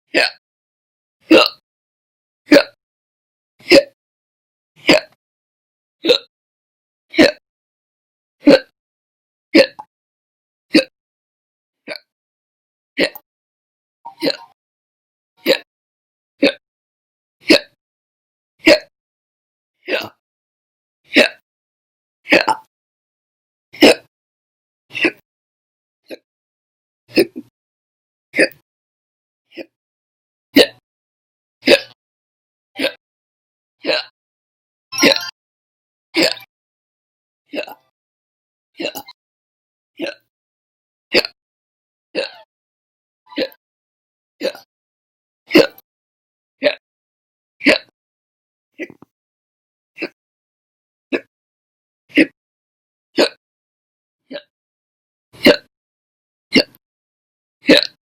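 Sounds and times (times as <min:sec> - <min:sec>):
person hiccupping: 0:00.1 - 0:00.4, 0:01.3 - 0:01.6, 0:02.5 - 0:02.8, 0:03.6 - 0:04.0, 0:04.8 - 0:05.2, 0:06.0 - 0:06.3, 0:07.1 - 0:07.4, 0:08.4 - 0:08.7, 0:09.6 - 0:09.9, 0:10.7 - 0:10.9, 0:11.8 - 0:12.1, 0:13.0 - 0:13.2, 0:14.1 - 0:14.6, 0:15.4 - 0:15.7, 0:16.4 - 0:16.6, 0:17.4 - 0:17.8, 0:18.6 - 0:18.9, 0:19.9 - 0:20.2, 0:21.1 - 0:21.4, 0:22.3 - 0:22.7, 0:23.8 - 0:24.1, 0:27.1 - 0:27.5, 0:28.4 - 0:28.6, 0:30.6 - 0:30.8, 0:31.6 - 0:32.0, 0:32.8 - 0:33.0, 0:33.8 - 0:34.2, 0:35.0 - 0:35.4, 0:36.2 - 0:36.5, 0:37.5 - 0:37.9, 0:38.8 - 0:39.2, 0:40.0 - 0:40.3, 0:41.1 - 0:41.4, 0:42.2 - 0:42.5, 0:43.3 - 0:43.6, 0:44.4 - 0:44.7, 0:45.5 - 0:45.8, 0:46.6 - 0:46.8, 0:47.6 - 0:47.9, 0:48.8 - 0:49.1, 0:53.2 - 0:53.4, 0:54.3 - 0:54.5, 0:55.4 - 0:55.7, 0:56.5 - 0:56.8, 0:57.7 - 0:58.0
woman hiccuping: 0:01.3 - 0:01.6, 0:09.6 - 0:09.9, 0:13.0 - 0:13.2, 0:14.1 - 0:14.6, 0:22.3 - 0:22.7, 0:32.8 - 0:33.0, 0:35.0 - 0:35.3, 0:36.2 - 0:36.5, 0:38.8 - 0:39.2, 0:42.2 - 0:42.5, 0:44.4 - 0:44.7, 0:45.5 - 0:45.8, 0:53.2 - 0:53.4, 0:56.6 - 0:56.8.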